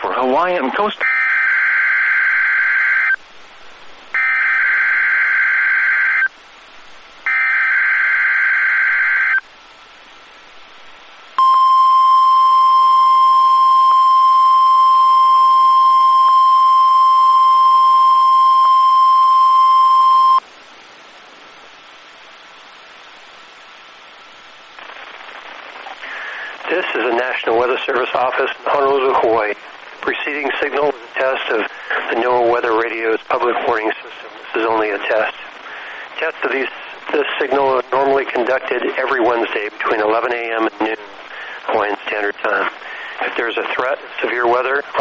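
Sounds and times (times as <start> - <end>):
faint radio hiss: 0.0 - 45.0
steady alarm tone: 11.4 - 20.4
warbling data tones: 11.4 - 20.4.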